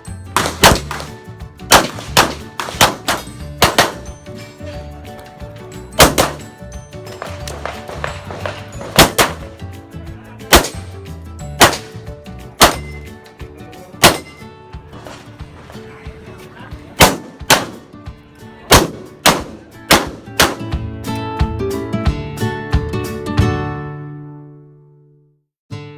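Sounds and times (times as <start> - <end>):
handgun shots: 0.4 - 4.1, 6.0 - 6.5, 7.2 - 9.5, 10.5 - 10.9, 11.6 - 12.0, 12.6 - 13.0, 14.0 - 14.4, 17.0 - 17.9, 18.7 - 20.7.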